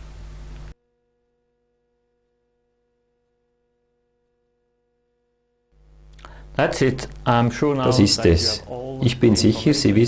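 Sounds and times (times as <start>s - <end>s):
background hiss and low hum: 0.0s - 10.0s
faint electrical hum: 0.0s - 10.0s.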